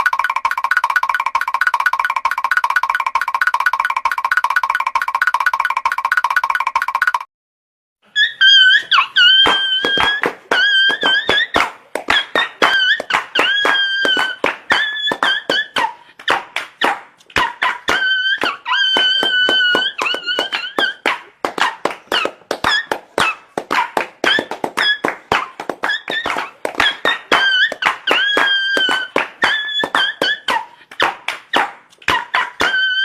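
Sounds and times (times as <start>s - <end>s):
high squeaky tones: 8.1s - 16.0s, 17.4s - 30.7s, 32.1s - 33.0s
rapid sharp taps: 9.4s - 32.8s.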